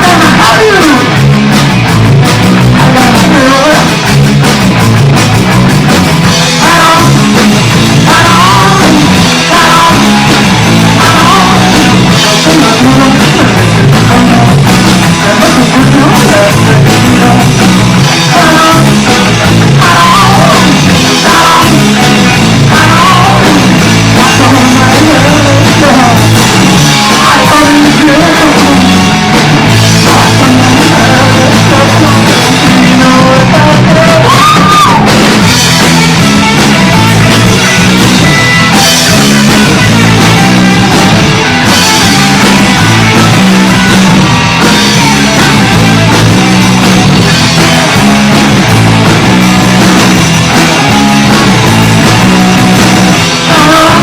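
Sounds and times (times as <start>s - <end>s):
person singing: 0.0s - 1.2s, 2.7s - 4.0s, 6.4s - 35.4s, 51.6s - 54.0s
punk rock band playing: 0.0s - 54.0s.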